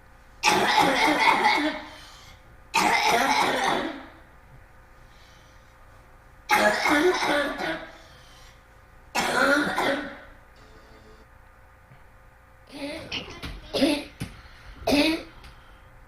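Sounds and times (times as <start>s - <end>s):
loud harsh coughing: 0.4s - 2.2s, 2.8s - 4.2s, 6.5s - 8.0s, 9.2s - 10.3s, 12.8s - 14.1s, 14.8s - 15.3s.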